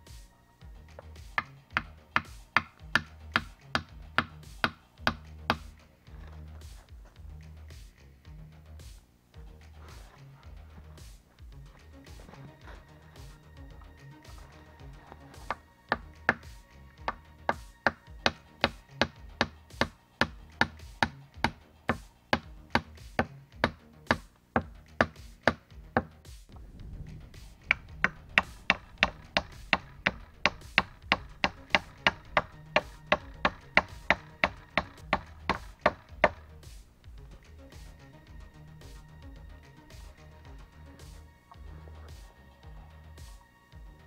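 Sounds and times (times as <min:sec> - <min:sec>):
background music: 0:00.0 - 0:44.0
blade chopping: 0:25.0 - 0:36.9.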